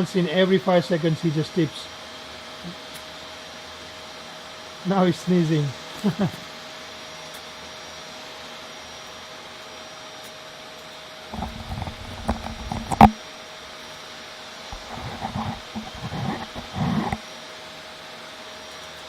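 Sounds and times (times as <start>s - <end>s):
low rumbling knocks and rustles: 11.4s - 13.2s
vacuum cleaner humming: 11.4s - 13.2s, 14.7s - 17.2s.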